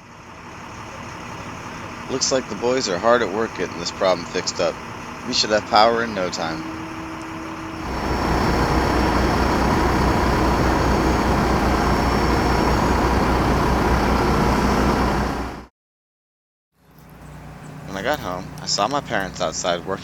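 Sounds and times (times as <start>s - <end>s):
truck engine running: 0.0s - 15.7s.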